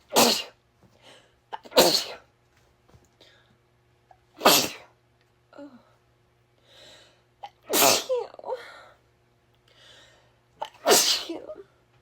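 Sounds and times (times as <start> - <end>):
woman sneezing: 0.1 - 0.6, 1.5 - 2.3, 4.4 - 4.9, 7.4 - 8.6, 10.6 - 11.6
breaths in: 6.6 - 7.3, 9.7 - 10.4.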